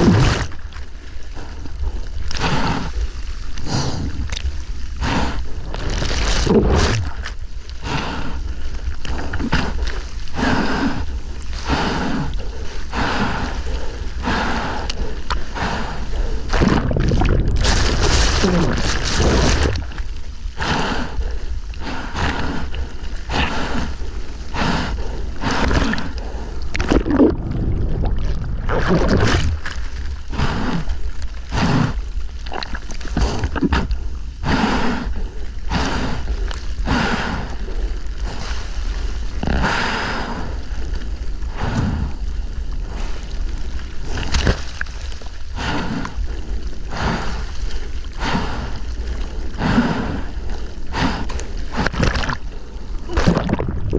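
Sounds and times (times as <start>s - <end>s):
low rumble of water: 0.0s - 53.9s
wind on microphone: 15.5s - 30.9s.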